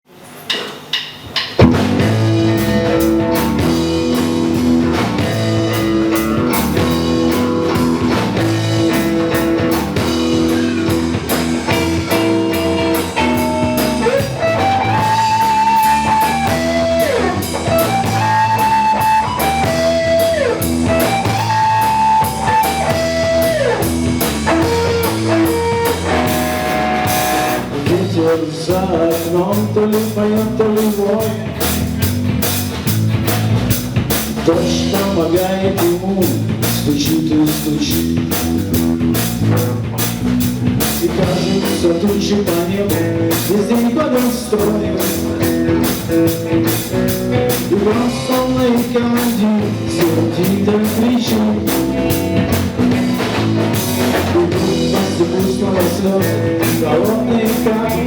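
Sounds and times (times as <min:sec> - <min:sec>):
drum kit: 0:00.1 - 0:58.0
lead guitar melody with bends: 0:01.6 - 0:27.8
guitar chords: 0:01.6 - 0:58.0.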